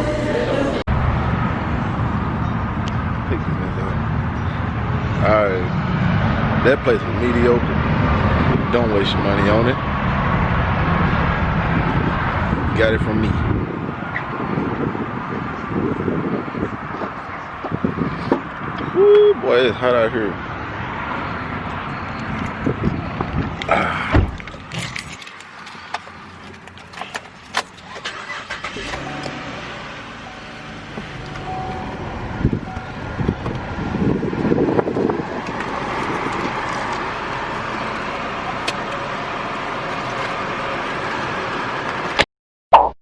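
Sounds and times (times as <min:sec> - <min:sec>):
car engine running: 0:20.5 - 0:42.2
handling clicks and knocks: 0:21.7 - 0:28.0
keys jangling: 0:24.3 - 0:28.0.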